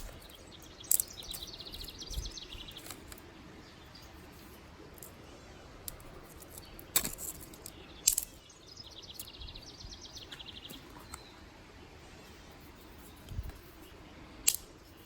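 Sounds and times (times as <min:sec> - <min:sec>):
sticks snapping: 0:00.0 - 0:03.2, 0:05.9 - 0:08.4, 0:14.4 - 0:14.8.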